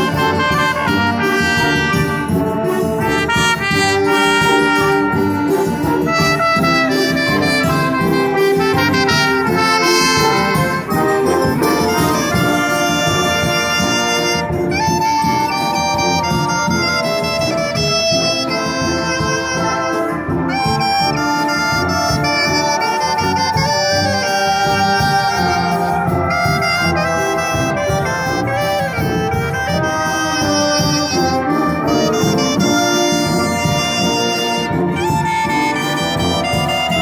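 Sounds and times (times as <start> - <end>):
brass band playing: 0.0 - 37.0.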